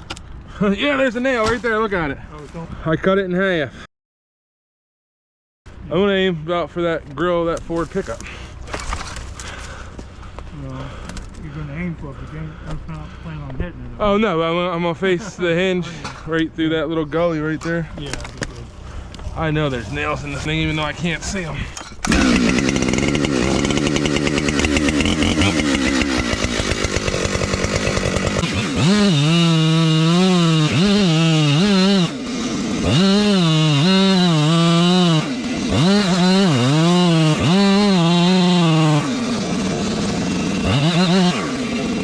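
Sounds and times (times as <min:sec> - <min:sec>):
chainsaw cutting wood: 0:21.9 - 0:42.0.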